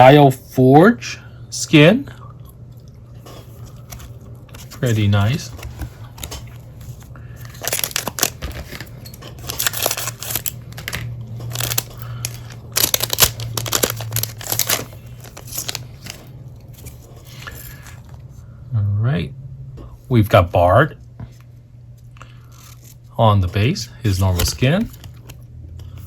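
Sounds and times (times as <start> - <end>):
packaging crinkling and tearing: 3.5 - 18.1, 22.4 - 23.0.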